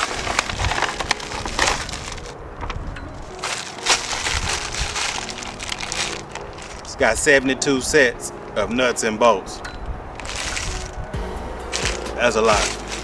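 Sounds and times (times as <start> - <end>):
plastic packaging crinkling: 0.0 - 7.4, 10.1 - 13.0.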